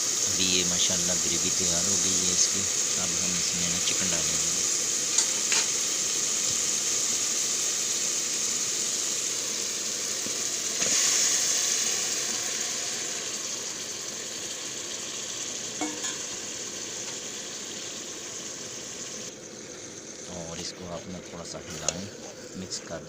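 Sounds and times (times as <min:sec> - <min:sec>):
masala sizzling in a pot: 0:00.0 - 0:22.9
utensil clinking: 0:15.8 - 0:16.3.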